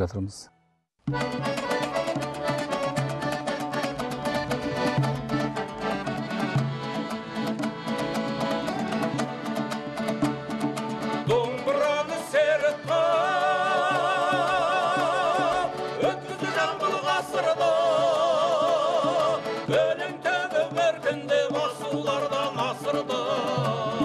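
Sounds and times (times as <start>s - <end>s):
folk instrumental accompaniment: 1.0s - 24.0s
voices singing with vibrato: 11.0s - 24.0s.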